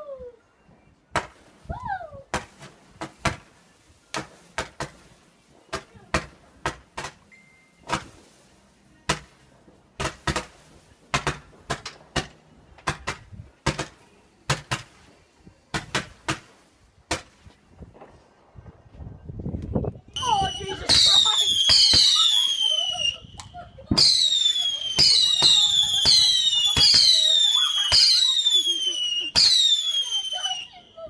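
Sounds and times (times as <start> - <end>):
fireworks bangs: 9.1 - 15.1, 20.2 - 30.8.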